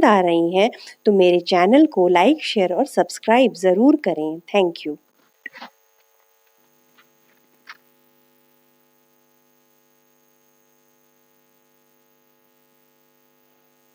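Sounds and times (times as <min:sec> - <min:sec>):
faint electrical hum: 0:00.0 - 0:13.9.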